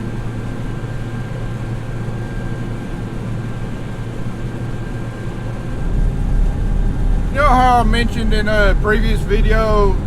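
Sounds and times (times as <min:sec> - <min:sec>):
faint high whine: 0:05.6 - 0:10.0
vehicle engine running: 0:05.7 - 0:10.0.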